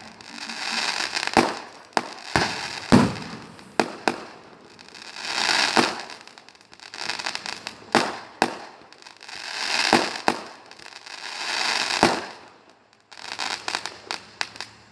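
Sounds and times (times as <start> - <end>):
firecracker bangs: 0.0 - 6.3
firecrackers hissing crackle: 0.0 - 14.9.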